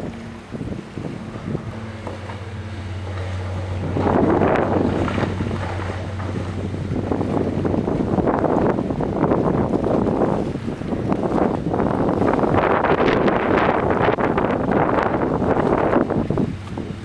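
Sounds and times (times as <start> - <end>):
diesel engine drone: 0.0 - 9.2
wind buffeting microphone: 0.0 - 17.0.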